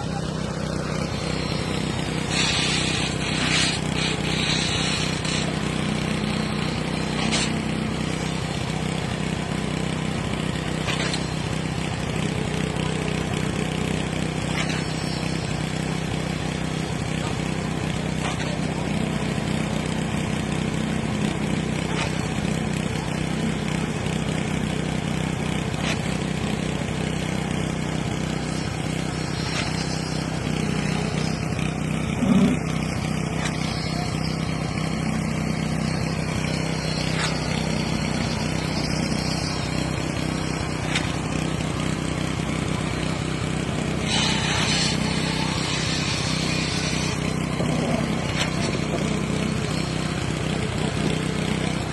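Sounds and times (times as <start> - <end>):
construction machinery engine drone: 0.0 - 51.9
hissing noise: 1.1 - 5.4.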